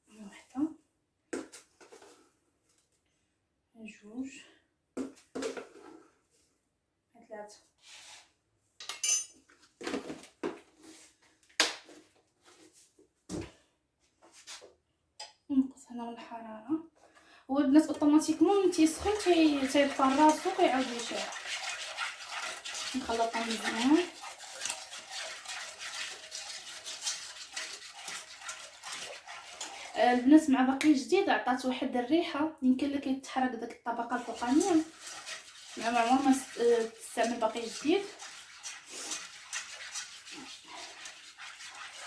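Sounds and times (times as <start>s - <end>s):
kitchen utensils knocking and scraping: 18.0s - 30.3s, 34.1s - 42.0s.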